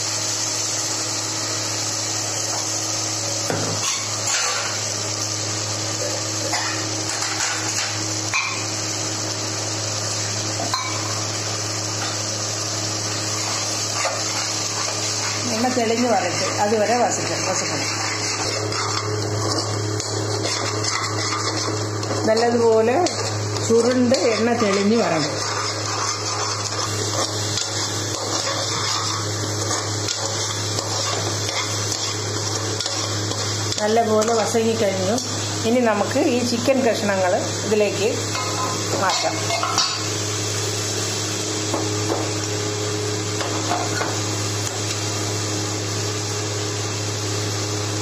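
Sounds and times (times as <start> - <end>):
paste sizzling in hot oil: 0.0 - 48.0
steady low hum: 12.0 - 40.6.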